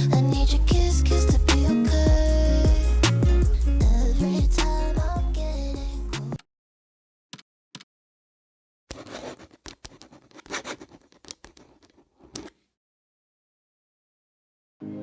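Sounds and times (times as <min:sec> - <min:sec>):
scratching and rustling: 0:08.9 - 0:12.7.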